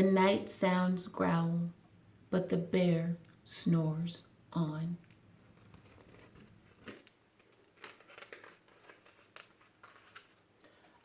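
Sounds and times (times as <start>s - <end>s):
paper rustling: 5.4s - 11.0s.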